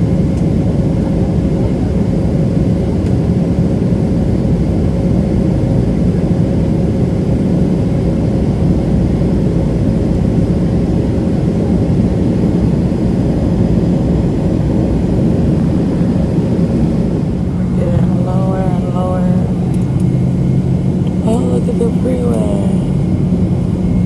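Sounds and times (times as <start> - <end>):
airliner cabin engine rumble: 0.0 - 24.0
faint steady hum: 13.4 - 24.0.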